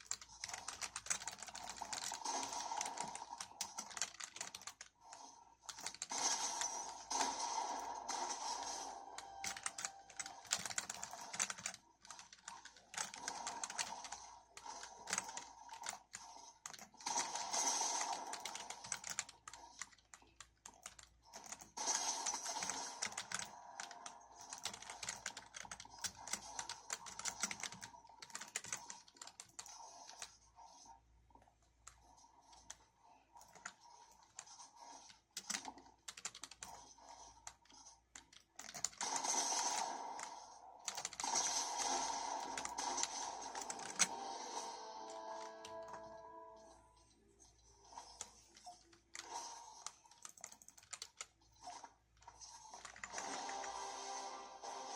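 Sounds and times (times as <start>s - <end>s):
mechanical keyboard typing: 0.0s - 5.0s, 5.7s - 6.4s, 8.5s - 30.3s, 35.4s - 36.8s, 37.4s - 39.2s, 40.9s - 44.4s, 48.2s - 51.4s.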